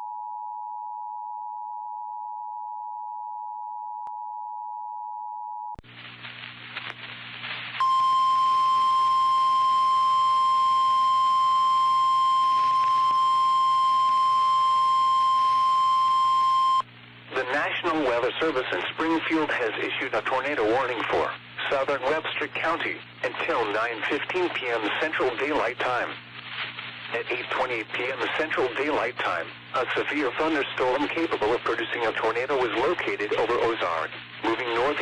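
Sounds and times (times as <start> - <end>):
steady warning alarm tone: 7.8 - 16.8.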